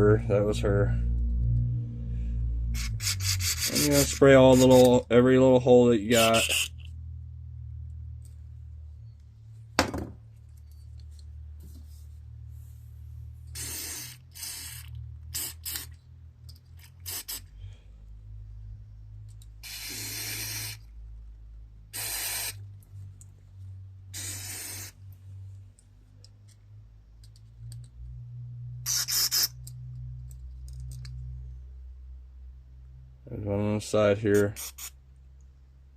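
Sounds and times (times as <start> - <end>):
aerosol spray hissing bursts: 13.5 - 15.9, 17.0 - 17.5, 19.6 - 20.8, 21.9 - 22.6, 24.2 - 25.0, 28.9 - 29.5, 34.4 - 35.0.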